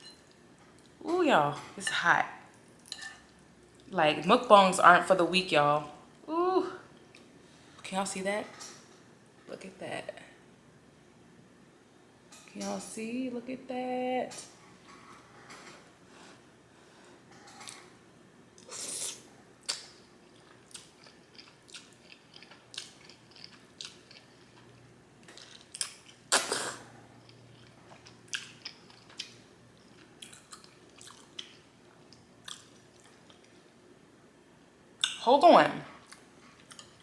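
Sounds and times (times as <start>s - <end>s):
chewing and mouth smacking: 19.7s - 26.5s, 27.2s - 33.7s, 36.0s - 37.0s.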